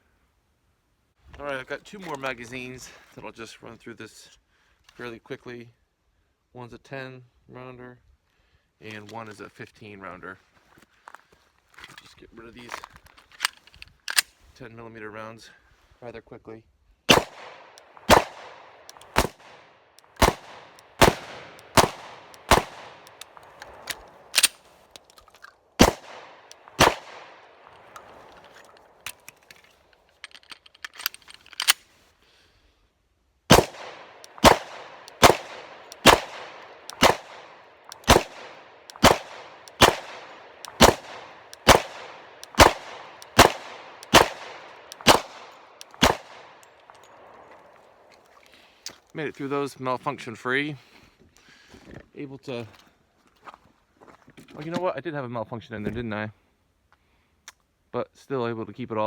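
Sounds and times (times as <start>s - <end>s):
pistol shots: 17.1s - 24.6s, 25.8s - 28.0s, 33.5s - 47.4s.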